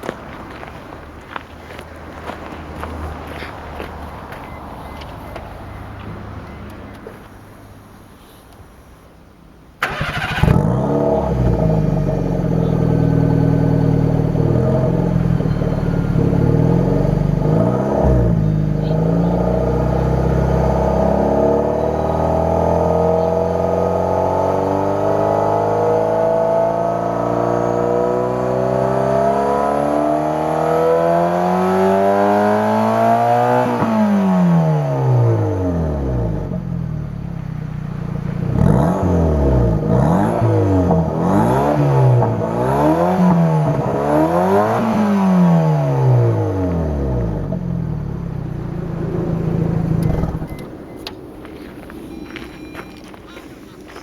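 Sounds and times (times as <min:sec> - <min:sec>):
engine throttle blips: 0:09.8 - 0:28.0, 0:33.4 - 0:53.4
car engine revving and idling: 0:09.8 - 0:51.8.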